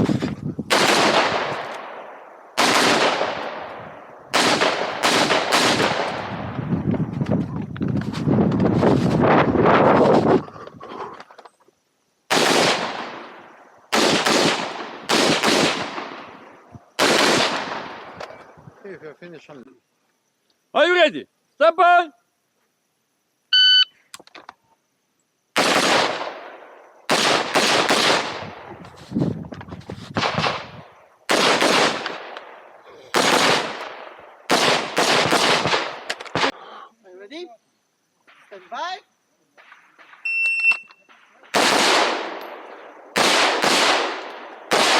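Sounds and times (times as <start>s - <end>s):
rifle shots echoing: 0.7s - 6.5s, 12.3s - 18.2s, 25.6s - 28.6s, 31.3s - 36.6s, 41.1s - 44.9s.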